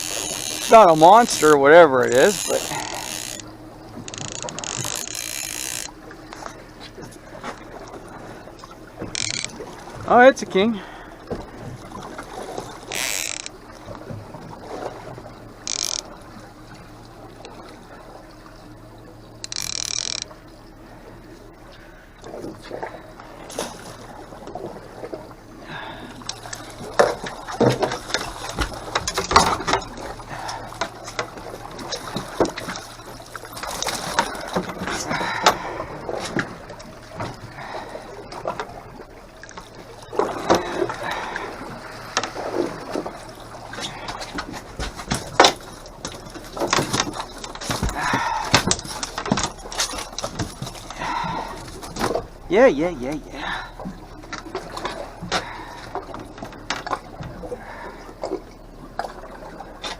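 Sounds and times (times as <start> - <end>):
fishing gear knocking and rattling: 0.0 - 7.7, 9.0 - 9.6, 12.8 - 13.6, 15.6 - 16.1, 19.4 - 20.4, 26.2 - 37.4, 42.1 - 53.3
steady low hum: 0.0 - 59.9.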